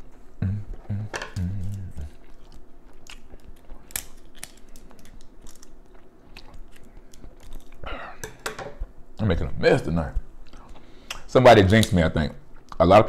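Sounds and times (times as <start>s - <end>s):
chewing: 0.7s - 8.3s
crab shell cracking: 2.4s - 8.5s.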